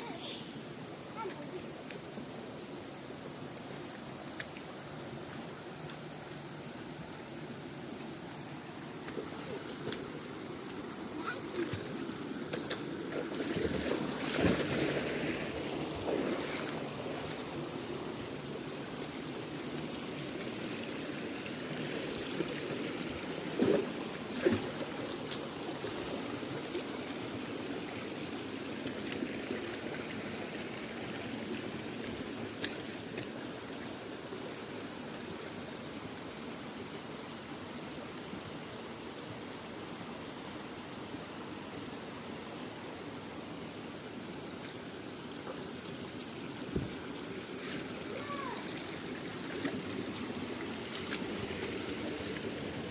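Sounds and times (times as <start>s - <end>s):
water running over rocks: 0.0s - 36.4s, 42.9s - 52.9s
knocks or splashes: 11.2s - 16.9s, 23.5s - 25.4s.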